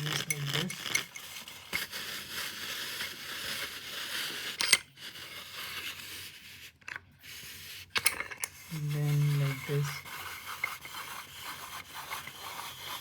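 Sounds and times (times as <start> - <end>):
metal clamp rubbing and scraping: 0.0 - 1.9.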